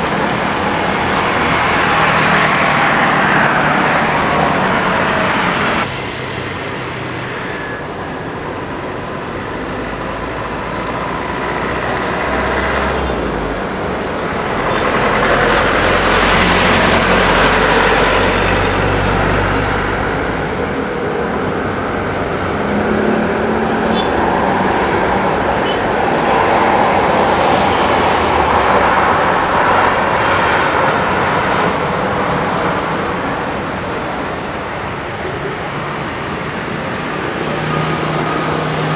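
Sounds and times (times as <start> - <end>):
engine rumbling: 0.0 - 38.9
traffic noise: 0.0 - 38.9.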